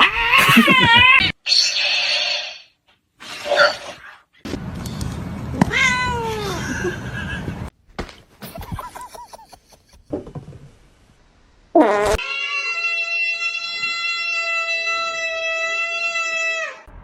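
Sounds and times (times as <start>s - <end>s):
cats meowing: 0.0s - 1.3s, 5.6s - 6.6s, 12.2s - 16.7s.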